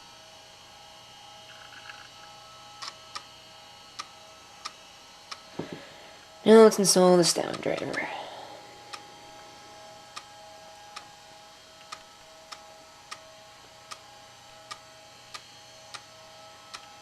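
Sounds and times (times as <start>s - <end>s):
faint electronic whine: 0.0s - 17.0s
regular sharp clicking: 11.8s - 13.3s, 13.9s - 16.1s.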